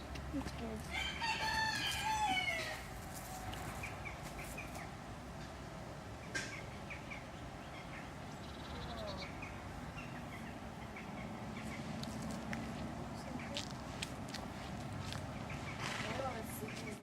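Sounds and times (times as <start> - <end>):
rooster crowing: 0.9 - 2.9
small birds chirping: 3.5 - 5.0, 6.2 - 17.0.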